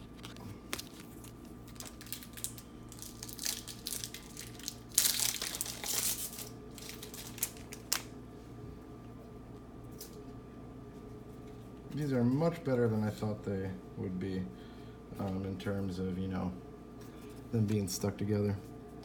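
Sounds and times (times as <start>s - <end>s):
wrapper crinkling: 0.0s - 8.1s.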